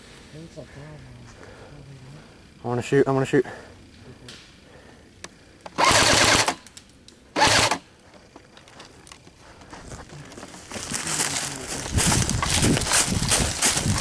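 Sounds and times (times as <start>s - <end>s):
airsoft rifle full-auto bursts: 5.8s - 6.7s, 7.4s - 7.8s.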